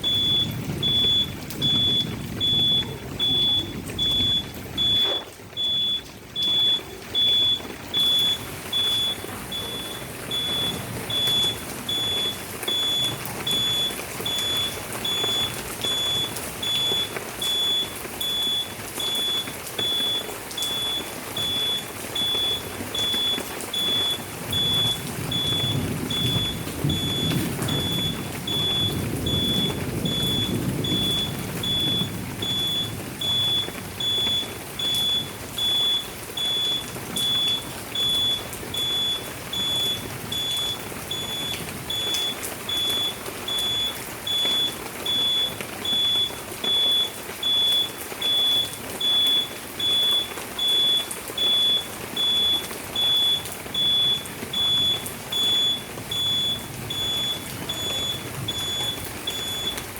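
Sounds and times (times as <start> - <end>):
electronic scooter beeps: 0.0 - 59.8.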